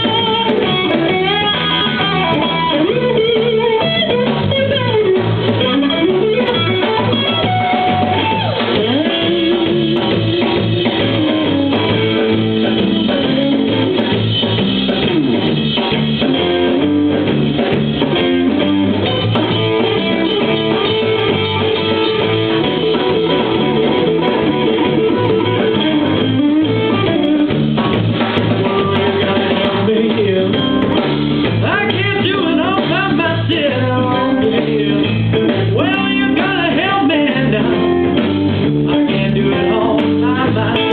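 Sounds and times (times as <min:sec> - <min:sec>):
guitar: 0:00.0 - 0:40.9
live blues band playing: 0:00.0 - 0:40.9.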